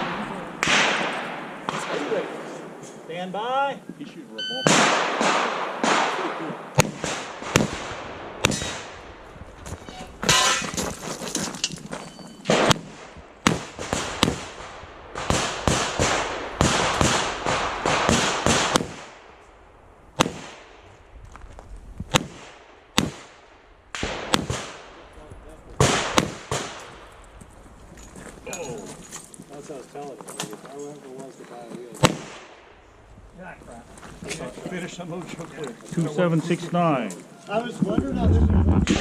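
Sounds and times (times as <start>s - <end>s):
revolver gunshots: 0.0s - 2.8s, 4.6s - 9.1s, 12.5s - 19.3s, 22.1s - 25.0s, 25.8s - 27.0s, 32.0s - 32.7s.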